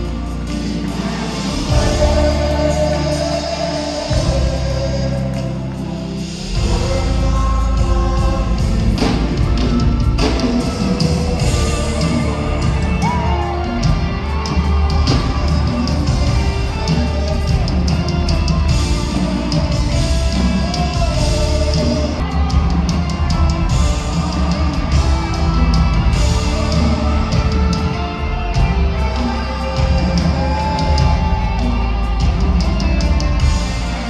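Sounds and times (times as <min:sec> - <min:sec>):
band with bass and drums: 0:00.0 - 0:34.0
crowd calling out: 0:00.0 - 0:34.0
people singing: 0:00.0 - 0:34.0.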